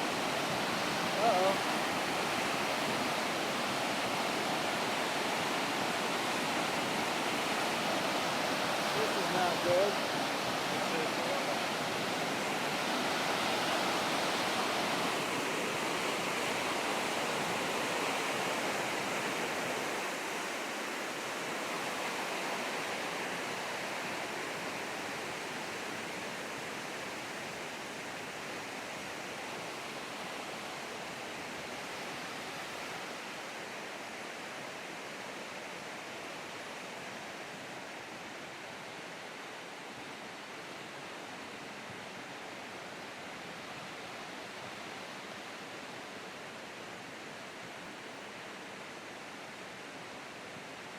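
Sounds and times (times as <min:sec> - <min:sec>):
floodwater rushing: 0:00.0 - 0:34.5.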